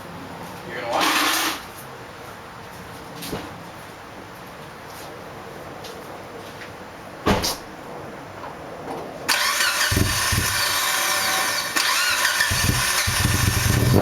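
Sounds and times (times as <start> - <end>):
car engine idling: 9.3 - 14.0
starter motor whine: 9.3 - 14.0.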